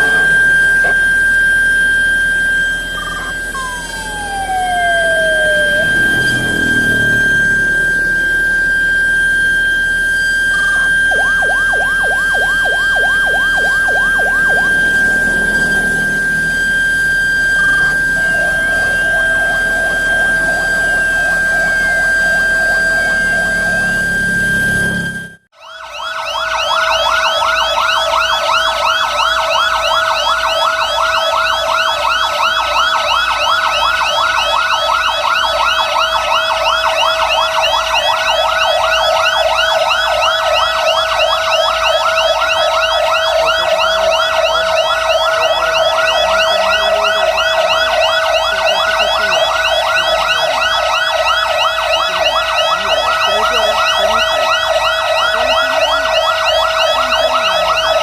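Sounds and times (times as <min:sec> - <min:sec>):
fire truck sirens wailing: 0:00.0 - 0:58.0.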